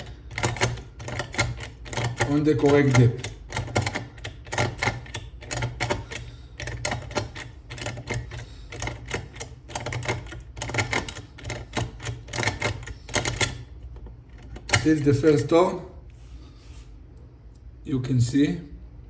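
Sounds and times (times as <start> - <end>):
rapid metallic clicking in a lock: 0.0 - 15.5.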